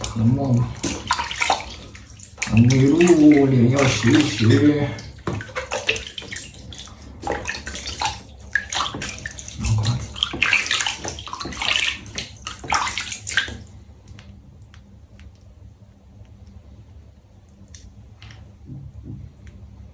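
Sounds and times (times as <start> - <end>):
water splashing in a bath: 0.0 - 19.9.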